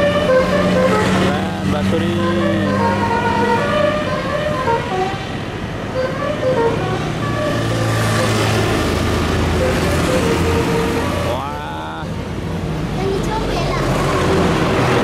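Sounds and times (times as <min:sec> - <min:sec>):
musical bus horn tune: 0:00.0 - 0:11.5
bus engine passing: 0:00.0 - 0:15.0.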